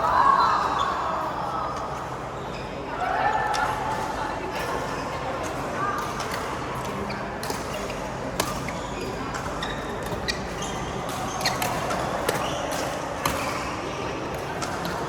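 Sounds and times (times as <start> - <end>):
rackets striking shuttlecock: 7.4 - 15.0.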